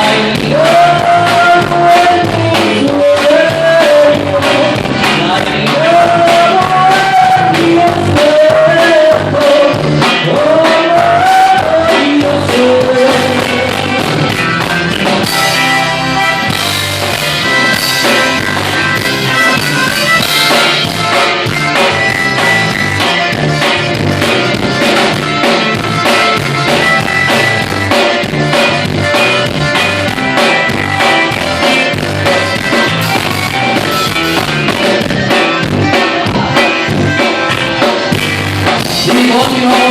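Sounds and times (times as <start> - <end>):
person singing: 0.0 - 14.4, 38.6 - 39.9
band music with steady beat: 0.0 - 39.9.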